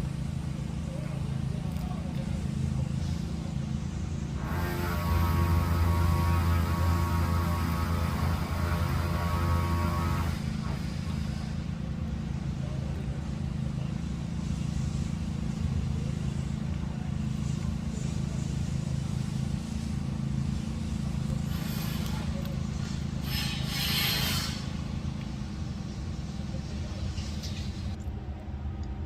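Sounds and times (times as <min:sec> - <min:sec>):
truck engine running: 0:00.0 - 0:29.0
short hisses: 0:21.4 - 0:26.2.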